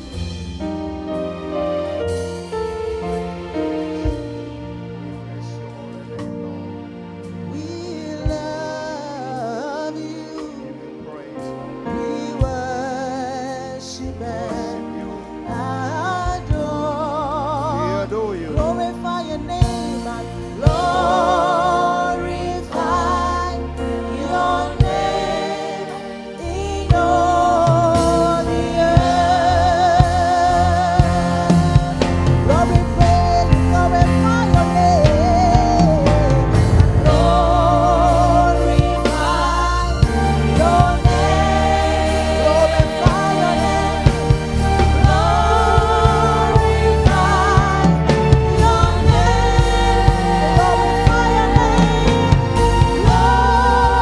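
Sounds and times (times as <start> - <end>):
gospel singing with vibrato: 0.0 - 54.0
instrumental accompaniment: 0.0 - 54.0.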